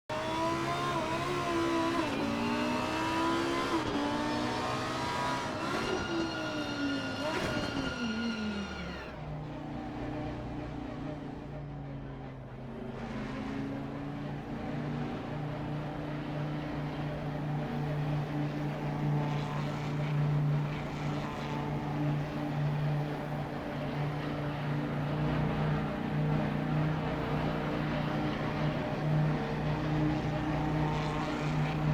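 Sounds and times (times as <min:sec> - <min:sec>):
vehicle engine accelerating: 0:00.1 - 0:09.1, 0:12.9 - 0:31.9.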